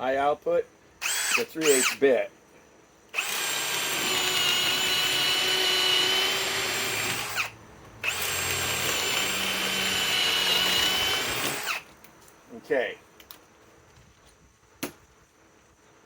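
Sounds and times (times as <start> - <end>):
cordless drill motor whine: 1.0 - 2.0, 3.1 - 11.9.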